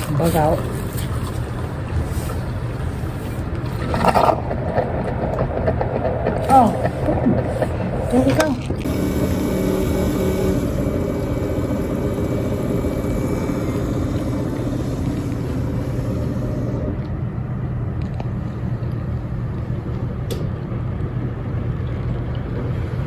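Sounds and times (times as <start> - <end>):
coffee maker pump humming: 0.0 - 23.0
hiss of water flow: 6.4 - 17.0.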